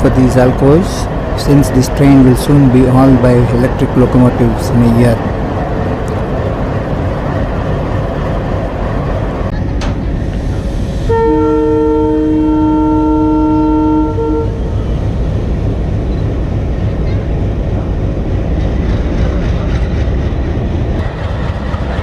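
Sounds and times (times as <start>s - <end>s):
diesel locomotives rumbling: 0.0s - 22.0s
two-note locomotive horn: 11.1s - 14.8s.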